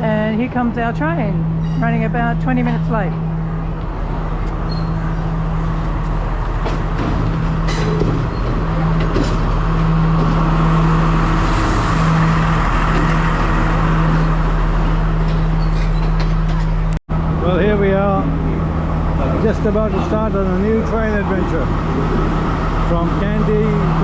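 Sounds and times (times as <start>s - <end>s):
diesel locomotive engine droning: 0.0s - 24.0s.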